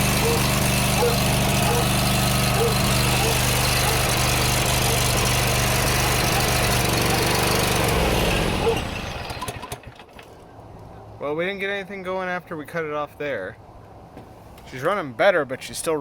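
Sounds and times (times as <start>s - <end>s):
lawn tractor engine running roughly: 0.0s - 10.4s.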